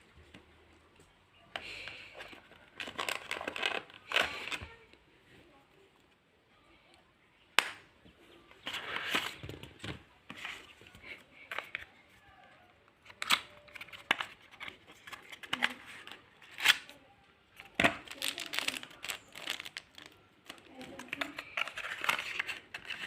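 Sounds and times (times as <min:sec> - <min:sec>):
packaging rustling and scraping: 0:02.0 - 0:04.7, 0:08.6 - 0:10.8, 0:18.0 - 0:23.0.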